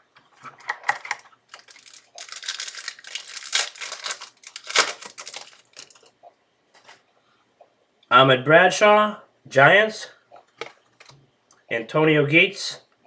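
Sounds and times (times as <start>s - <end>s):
foil wrapper crinkling: 0.6s - 6.1s.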